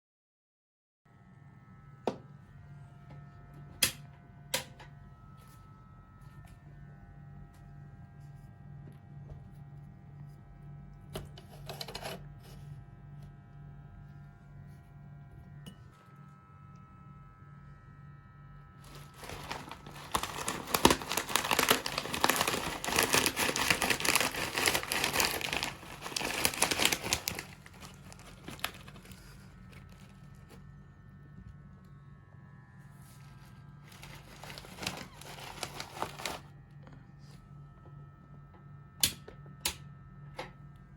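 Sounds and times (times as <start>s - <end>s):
electric meat grinder humming: 1.1s - 40.9s
crunchy snack cracking: 18.9s - 30.4s.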